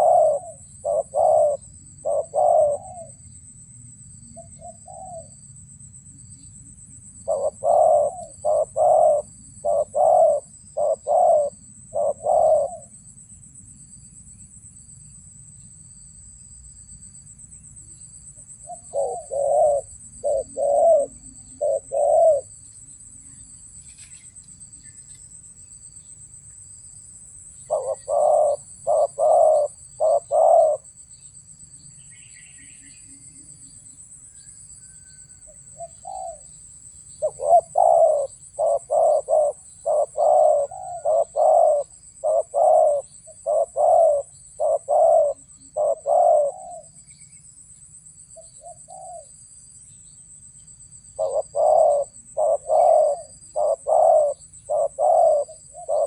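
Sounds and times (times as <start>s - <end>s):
doves cooing: 0.0s - 3.2s, 7.2s - 13.0s, 18.6s - 22.6s, 27.6s - 30.9s, 34.8s - 36.5s, 37.2s - 47.0s, 51.2s - 56.0s.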